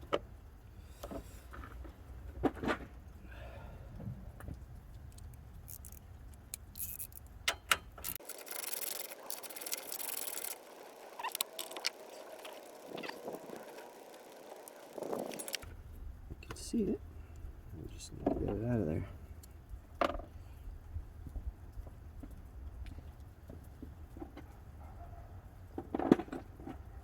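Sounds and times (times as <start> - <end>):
rapid ratchet clicking: 5.7 - 15.6.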